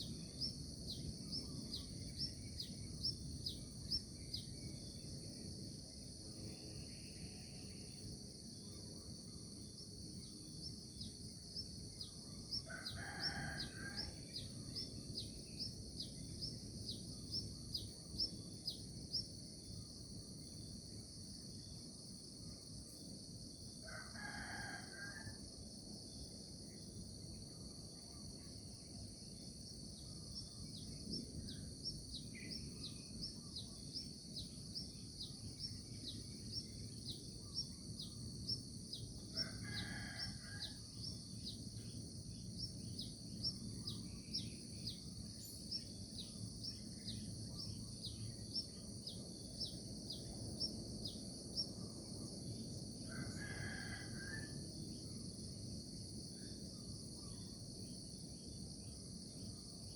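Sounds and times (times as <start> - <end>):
high insect drone: 0.0 - 59.9.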